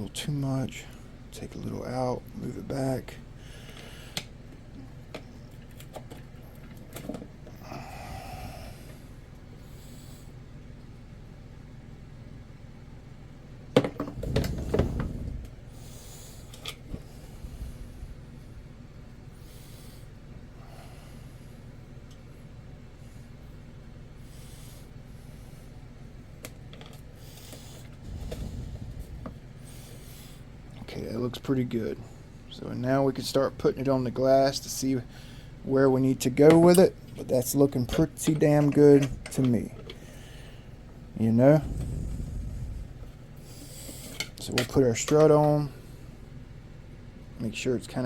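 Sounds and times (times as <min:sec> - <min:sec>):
steady low hum: 0:00.0 - 0:48.0
soft rubbing and scraping: 0:14.1 - 0:15.6, 0:27.9 - 0:30.0, 0:41.4 - 0:43.2
low bump: 0:41.6 - 0:43.2.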